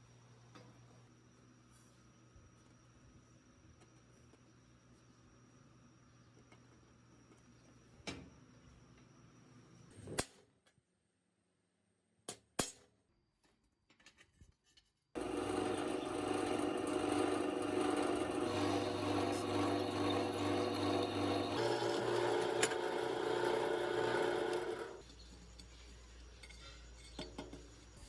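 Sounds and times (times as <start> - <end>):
loud machine running: 15.2 - 25.0.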